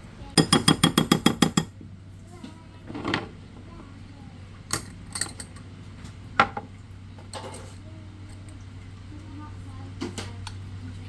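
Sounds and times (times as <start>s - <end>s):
knocks and clinks: 0.4s - 1.7s
metal spoon clinking against bowl: 0.4s - 1.7s.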